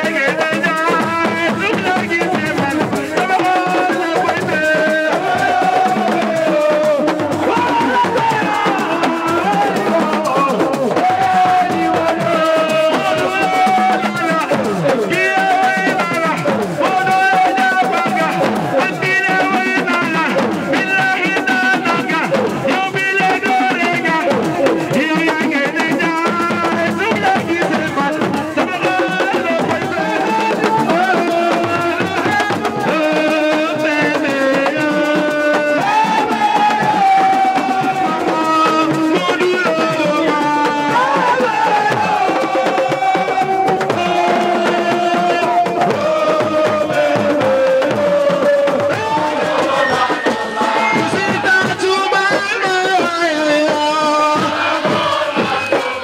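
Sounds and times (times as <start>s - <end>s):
drumming: 0.0s - 56.0s
pitched melody line: 35.8s - 56.0s.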